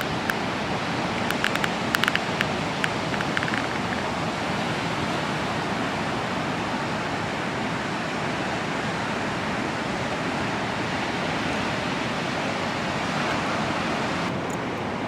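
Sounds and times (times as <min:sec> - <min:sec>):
ocean surf rushing: 0:00.0 - 0:15.0
sharp clicks: 0:01.2 - 0:04.0.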